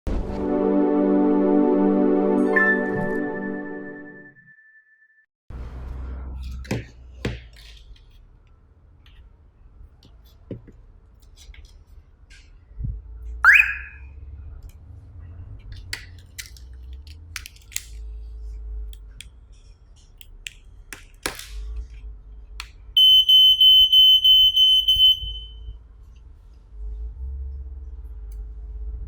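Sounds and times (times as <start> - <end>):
smoke detector alarm beeping: 13.5 - 14.1, 23.0 - 25.7.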